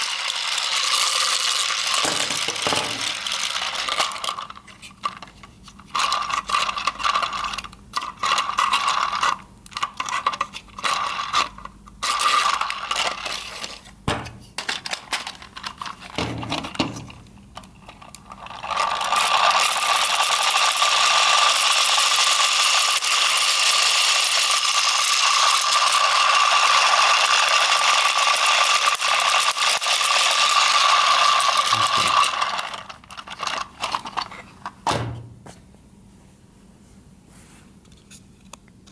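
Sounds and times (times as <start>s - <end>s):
plastic gears clicking and scraping: 0.0s - 13.8s, 14.6s - 34.7s
gears whirring with a whine: 18.6s - 33.7s.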